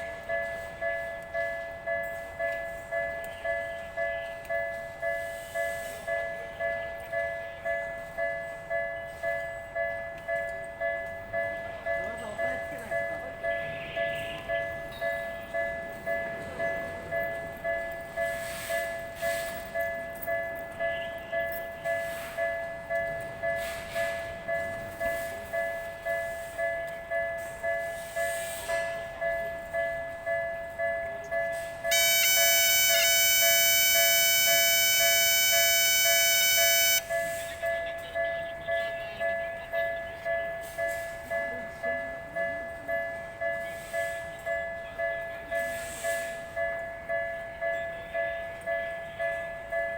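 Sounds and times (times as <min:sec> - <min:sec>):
level crossing alarm bell: 0:00.0 - 0:28.4, 0:29.2 - 0:49.9
steady high-pitched tone: 0:31.9 - 0:37.0.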